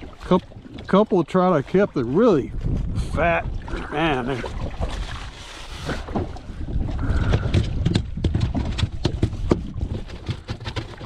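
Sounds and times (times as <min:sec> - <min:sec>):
wind on microphone: 0:02.0 - 0:10.6
knocks and clatter: 0:07.2 - 0:11.0.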